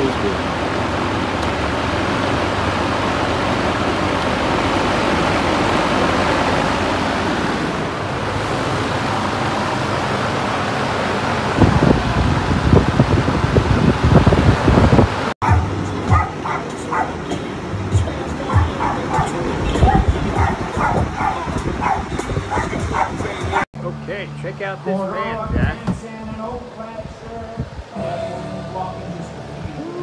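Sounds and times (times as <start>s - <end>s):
wind buffeting microphone: 0.0s - 15.4s, 18.0s - 23.6s, 25.2s - 28.0s
drum fan running: 0.0s - 16.4s.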